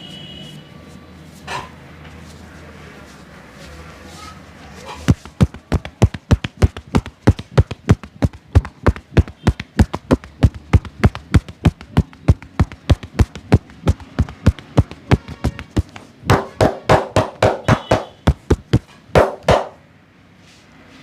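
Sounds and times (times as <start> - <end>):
hands tapping and slapping: 5.1 - 19.8.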